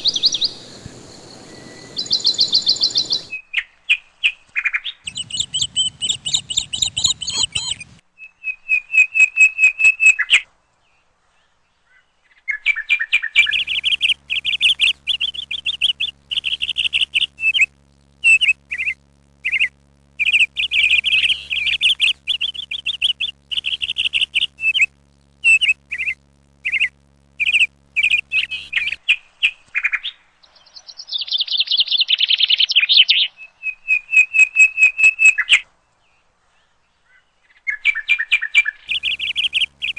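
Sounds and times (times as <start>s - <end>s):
faint low hum: 0.0s - 3.4s, 5.0s - 8.1s, 13.1s - 37.7s, 38.4s - 39.9s
small bird chirping and trilling: 0.0s - 3.4s, 5.1s - 8.0s, 13.1s - 29.0s, 37.8s - 39.9s.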